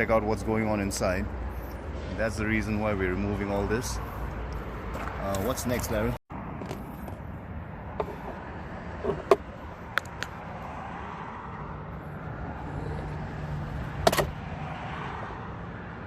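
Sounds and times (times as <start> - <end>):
outdoor background noise: 0.0 - 16.0
clicks and knocks of trim parts: 14.0 - 14.3.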